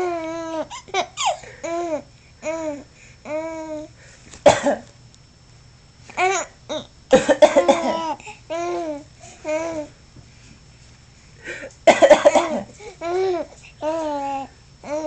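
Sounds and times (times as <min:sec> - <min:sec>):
adult coughing: 0:04.4 - 0:04.9, 0:07.1 - 0:08.2, 0:11.4 - 0:12.8.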